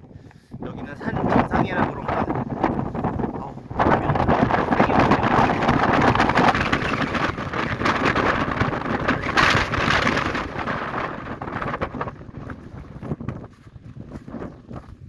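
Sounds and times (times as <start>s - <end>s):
strong wind buffeting microphone: 0.0s - 15.0s.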